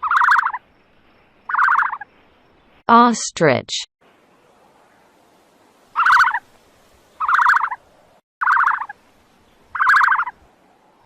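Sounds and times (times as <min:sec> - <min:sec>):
bird warbling gobble-like call: 0:00.0 - 0:00.6, 0:01.5 - 0:02.0, 0:05.9 - 0:06.5, 0:07.2 - 0:07.8, 0:08.4 - 0:09.0, 0:09.7 - 0:10.4.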